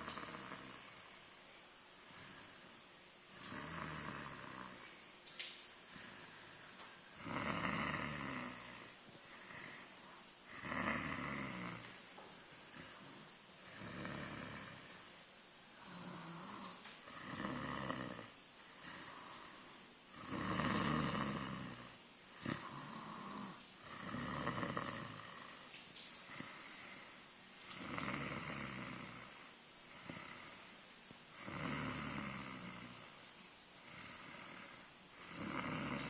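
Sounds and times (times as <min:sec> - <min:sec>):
person snoring: 0:00.0 - 0:01.3, 0:02.0 - 0:02.7, 0:03.3 - 0:05.0, 0:05.8 - 0:12.0, 0:12.6 - 0:36.0
soft breathing: 0:00.0 - 0:05.0, 0:05.7 - 0:07.3, 0:08.0 - 0:17.5, 0:18.6 - 0:20.0, 0:24.9 - 0:31.5, 0:32.4 - 0:36.0.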